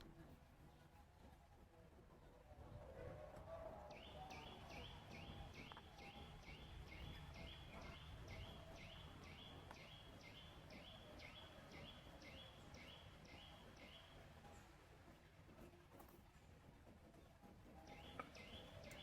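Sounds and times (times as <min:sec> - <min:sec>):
faint bird calls: 0:17.7 - 0:19.0.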